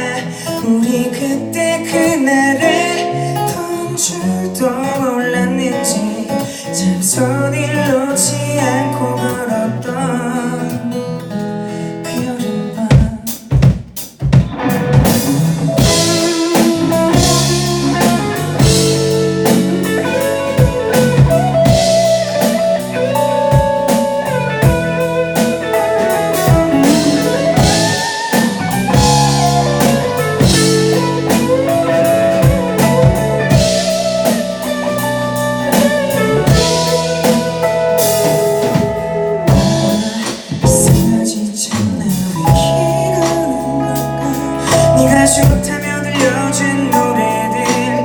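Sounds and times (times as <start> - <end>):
guitar melody with bending notes: 0.0 - 12.8, 14.2 - 48.0
drum kit beat: 12.8 - 48.0.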